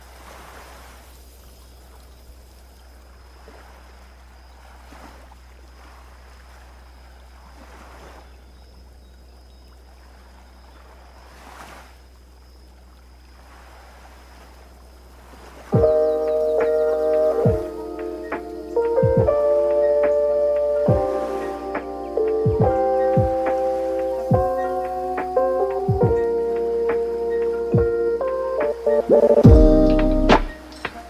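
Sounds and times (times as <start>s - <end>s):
small waves washing onto beach: 0.0s - 29.2s
steady low rumble: 29.4s - 30.7s.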